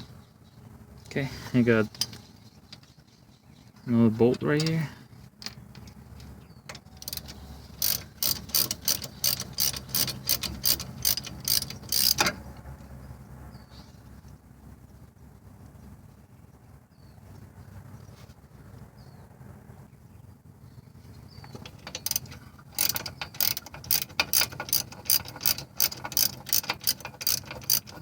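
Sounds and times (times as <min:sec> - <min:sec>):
hand ratchet clicking: 0:07.0 - 0:12.4, 0:21.4 - 0:28.0.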